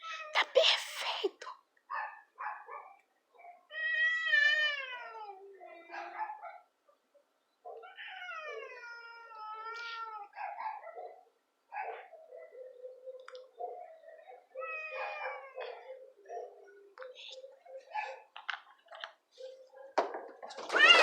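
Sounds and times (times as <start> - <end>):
cat yowling: 3.6 - 6.5, 7.8 - 11.0, 13.8 - 16.8, 20.6 - 21.0.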